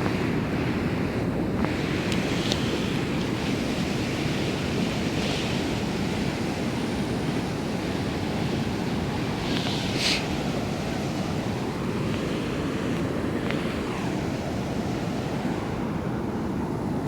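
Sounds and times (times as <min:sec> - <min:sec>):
water splash hiss: 0:01.8 - 0:15.4
river rushing water: 0:02.2 - 0:16.9.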